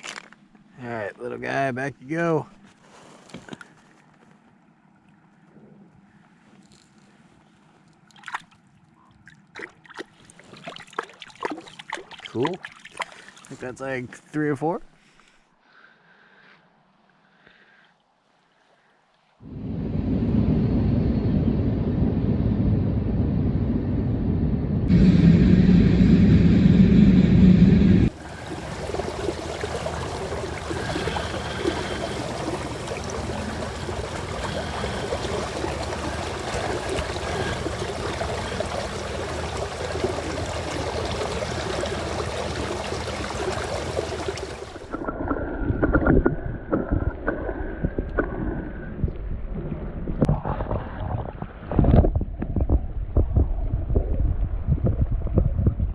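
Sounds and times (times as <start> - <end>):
river water rushing: 28.1 - 44.9
wind buffeting microphone: 45.7 - 55.9.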